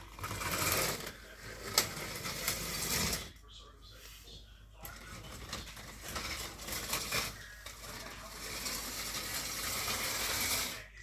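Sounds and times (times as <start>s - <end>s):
model train rattling on metal track: 5.4s - 10.8s.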